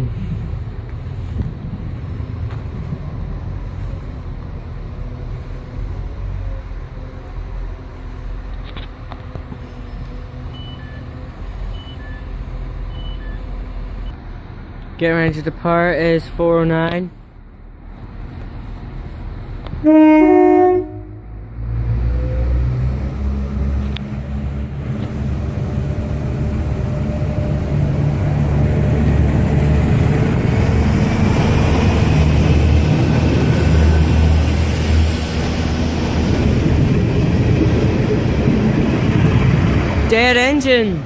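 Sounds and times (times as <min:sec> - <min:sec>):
train engines rumbling: 0:00.0 - 0:41.0
train two-note horn: 0:19.8 - 0:21.3.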